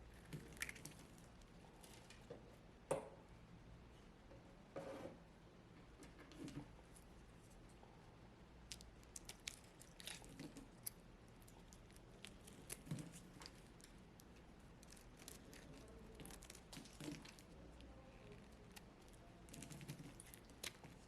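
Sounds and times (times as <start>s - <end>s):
brittle block crunching and crackling: 0.2s - 2.2s, 8.7s - 21.0s.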